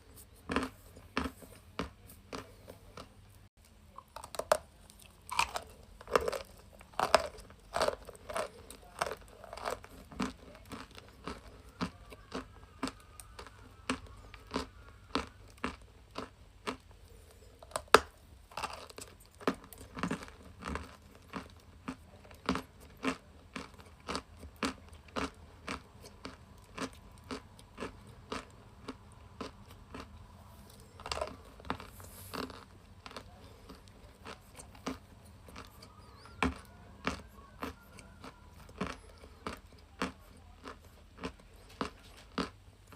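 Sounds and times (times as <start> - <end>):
chalk being chewed: 18.6 - 42.5.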